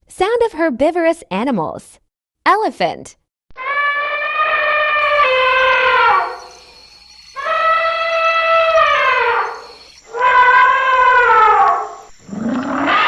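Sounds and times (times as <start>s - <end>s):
elephant trumpeting: 4.7s - 12.0s.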